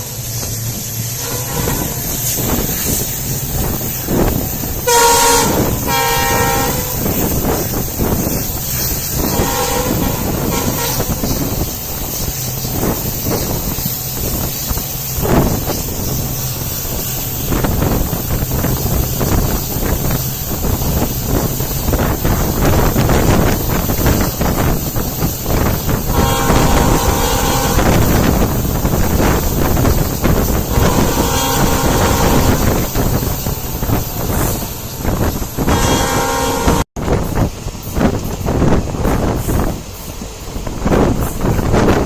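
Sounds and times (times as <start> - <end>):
locomotive engine humming: 0.0 - 42.0
train coach rumbling on track: 0.0 - 42.0
locomotive horn blasts: 1.2 - 2.6, 4.1 - 8.4, 9.2 - 11.6, 26.1 - 36.9.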